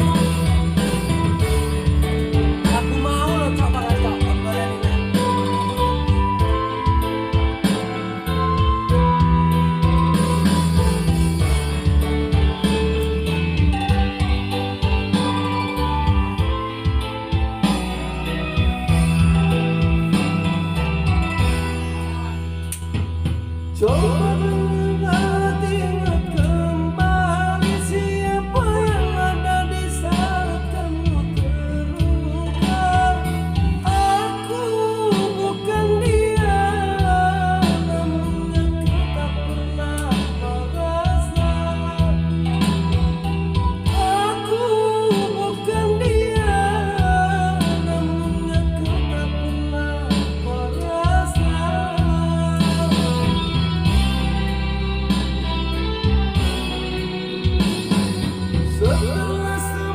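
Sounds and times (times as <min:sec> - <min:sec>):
person singing over backing track: 0:00.0 - 0:59.9.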